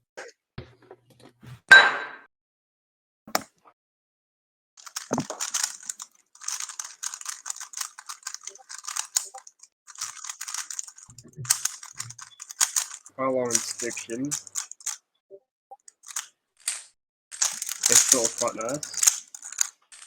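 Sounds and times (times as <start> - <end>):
puzzle cube plastic clicking: 4.8 - 15.0, 15.8 - 16.8, 17.4 - 20.0.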